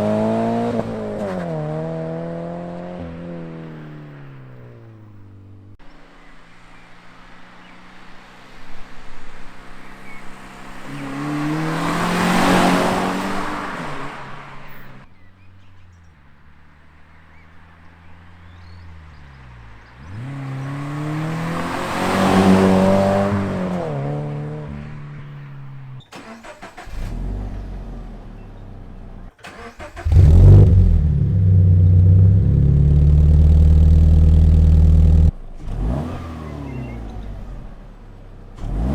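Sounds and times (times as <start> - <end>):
car driving past: 5.9 - 38.9
deep engine rumble: 30.0 - 35.9.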